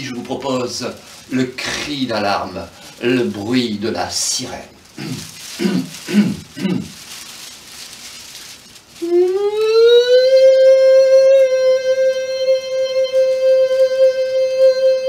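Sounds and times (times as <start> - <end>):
man imitating a siren: 9.0 - 15.0.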